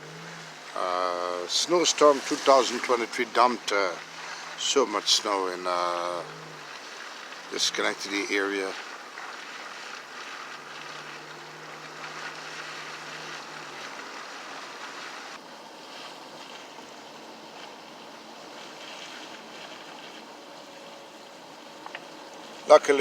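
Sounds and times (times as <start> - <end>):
faint low engine hum: 0.0 - 23.0
traffic hiss: 0.0 - 23.0.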